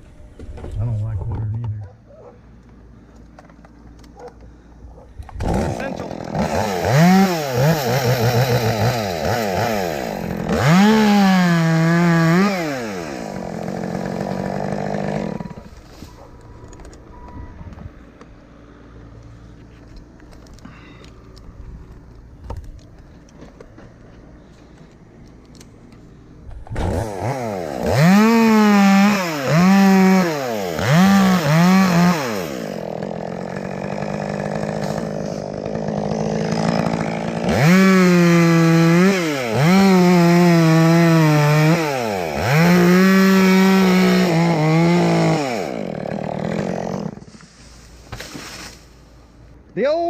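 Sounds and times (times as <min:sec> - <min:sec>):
two-stroke chainsaw revving: 0:05.3 - 0:15.8, 0:26.6 - 0:47.3.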